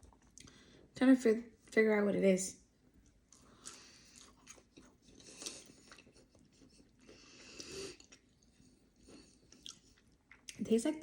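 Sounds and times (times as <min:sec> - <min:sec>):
person chewing crunchy food: 0:03.0 - 0:10.6.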